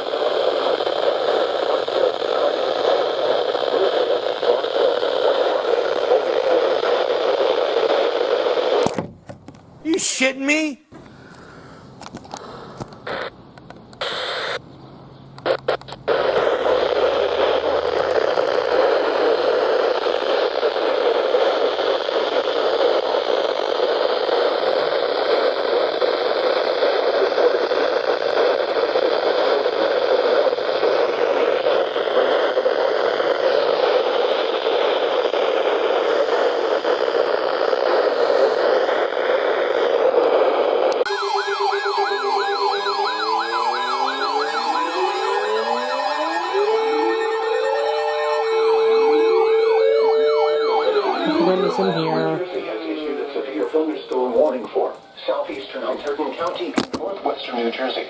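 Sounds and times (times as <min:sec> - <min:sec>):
radio static hiss: 0:00.0 - 0:09.0, 0:09.9 - 0:14.6, 0:15.4 - 0:41.1, 0:50.8 - 0:58.0
radio crackles: 0:00.0 - 0:10.2, 0:11.0 - 0:14.6, 0:15.4 - 0:41.1, 0:42.6 - 0:58.0
warbling alert tone: 0:43.2 - 0:52.4.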